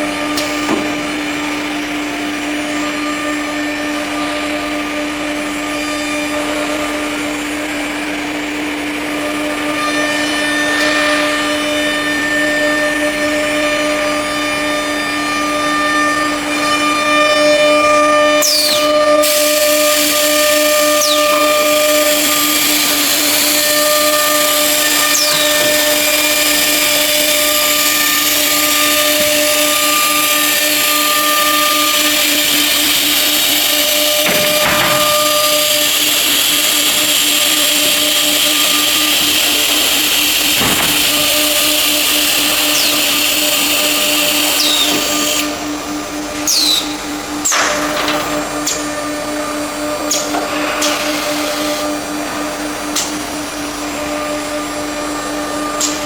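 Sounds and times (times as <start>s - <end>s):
router spindle whine: 0.0s - 56.0s
hiss of cutting and dust extraction: 18.5s - 45.9s.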